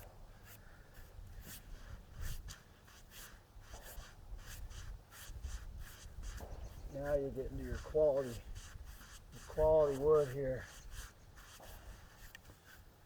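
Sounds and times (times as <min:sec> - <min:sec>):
faint scratching and rustling: 0:00.0 - 0:13.0.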